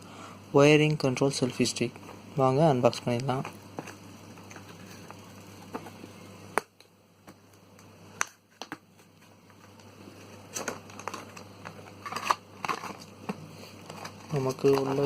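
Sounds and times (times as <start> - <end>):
packaging rustling: 9.6 - 15.0.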